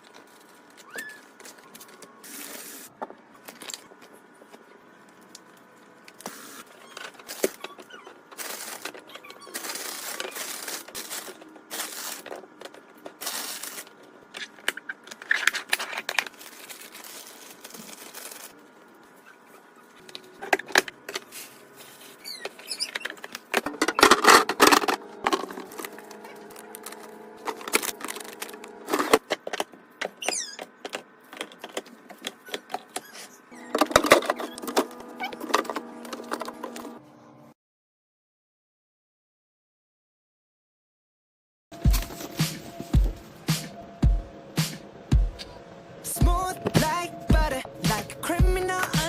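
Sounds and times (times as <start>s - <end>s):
packaging rustling: 6.2s - 19.1s, 21.0s - 29.5s
containers clinking and clattering: 23.0s - 29.7s.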